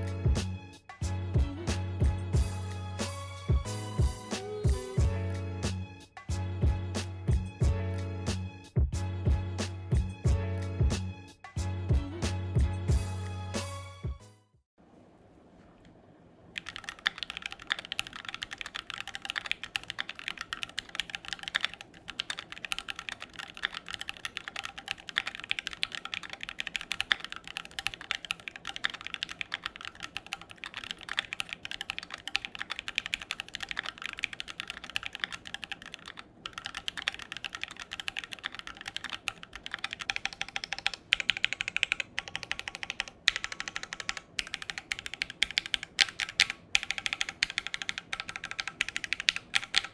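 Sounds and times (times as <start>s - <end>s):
typing on mechanical keyboard: 16.6s - 49.9s.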